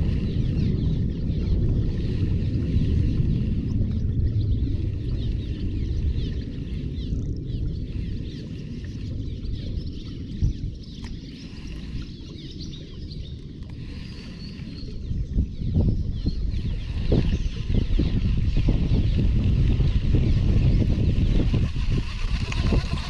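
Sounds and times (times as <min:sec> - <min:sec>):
wind buffeting microphone: 0:00.0 - 0:23.0
small birds chirping: 0:04.0 - 0:23.0.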